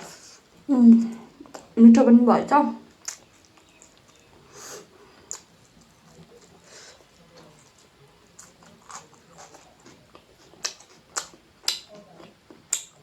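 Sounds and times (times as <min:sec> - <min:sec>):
person chewing food: 0:00.0 - 0:01.8, 0:02.9 - 0:13.0
mouth clicks and smacks: 0:03.0 - 0:04.2, 0:10.5 - 0:13.0.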